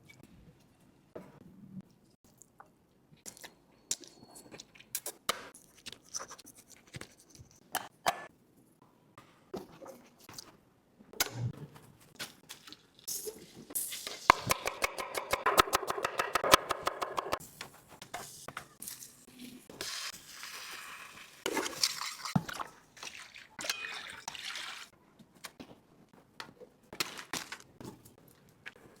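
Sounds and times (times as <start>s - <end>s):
liquid splashing and pouring: 19.8s - 24.9s
utensils clinking on pots: 23.6s - 24.3s.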